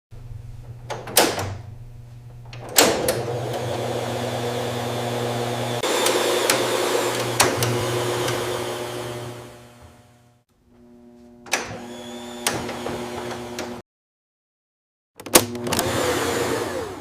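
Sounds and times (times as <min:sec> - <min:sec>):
vacuum cleaner motor running: 0:02.8 - 0:13.8, 0:15.3 - 0:17.0.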